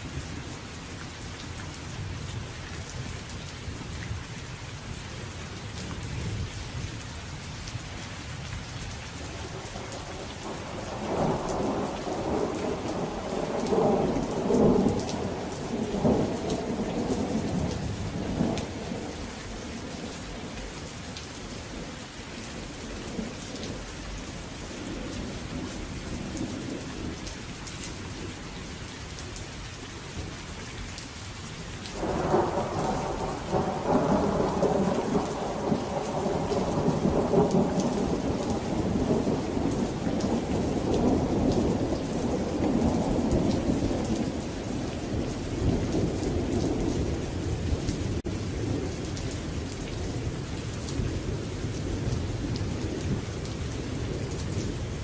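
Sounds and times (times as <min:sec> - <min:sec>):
steady rain: 0:00.0 - 0:55.0
rumble of thunder: 0:10.1 - 0:20.1, 0:31.9 - 0:55.0.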